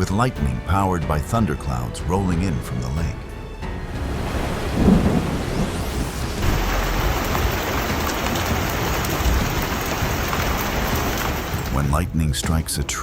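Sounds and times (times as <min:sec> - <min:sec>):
thunder rumbling: 0:03.7 - 0:12.0
heavy rain hiss: 0:03.9 - 0:12.0.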